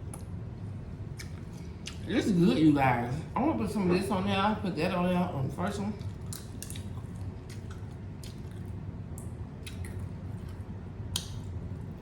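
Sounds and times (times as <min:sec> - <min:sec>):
wet squishing eating sounds: 0:00.0 - 0:02.4, 0:05.9 - 0:12.0.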